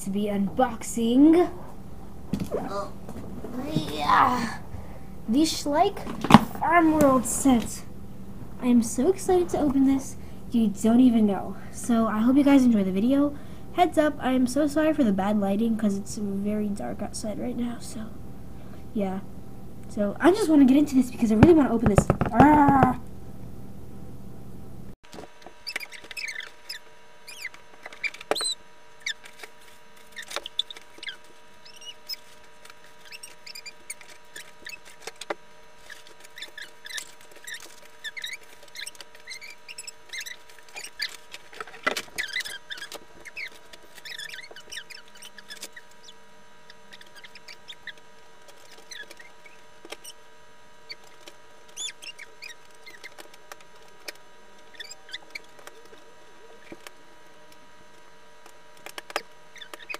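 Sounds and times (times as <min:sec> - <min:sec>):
faint steady hum: 0:00.0 - 0:59.9
packaging crinkling and scraping: 0:27.5 - 0:50.1.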